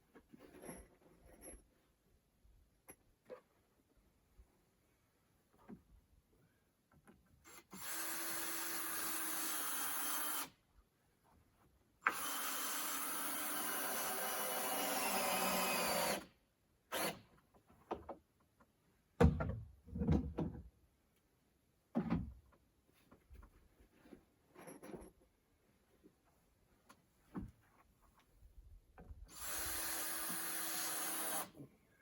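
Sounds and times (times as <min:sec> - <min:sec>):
handheld power tool running: 0:29.3 - 0:31.5.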